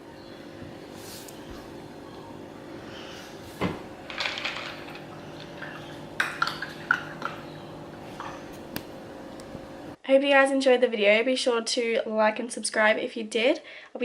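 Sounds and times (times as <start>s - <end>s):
steady low hum: 0.0s - 10.0s.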